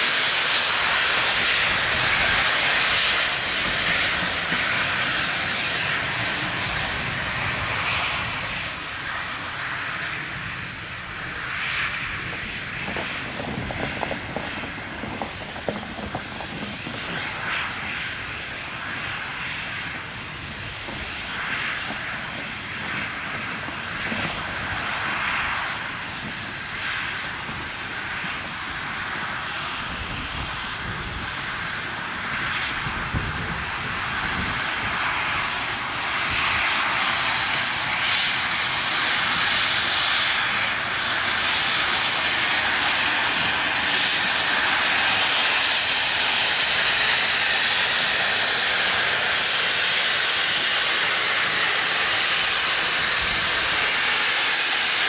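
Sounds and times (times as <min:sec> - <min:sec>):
loud steam hiss: 0:00.0 - 0:55.0
steam locomotive exhaust beats: 0:00.0 - 0:55.0.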